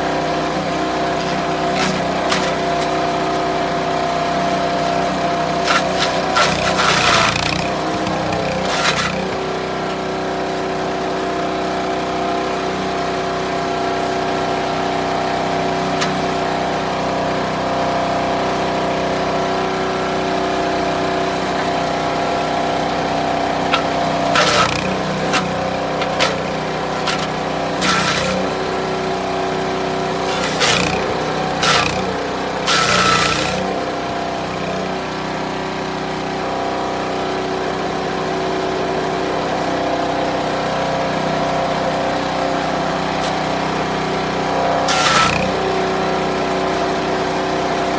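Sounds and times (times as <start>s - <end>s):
wood chipper running: 0.0s - 47.9s
branches being chipped: 1.2s - 3.4s, 4.5s - 10.0s, 23.6s - 28.9s, 30.0s - 33.9s, 44.6s - 45.7s.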